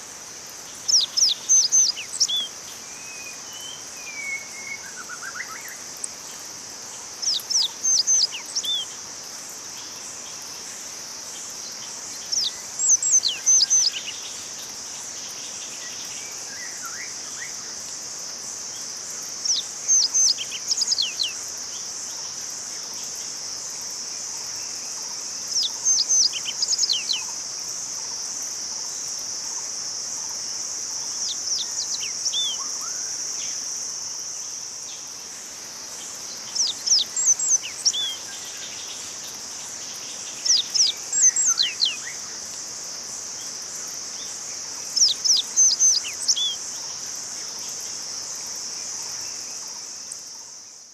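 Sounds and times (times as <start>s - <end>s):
songbird singing: 0.0s - 50.9s
high-pitched insect drone: 19.0s - 50.8s.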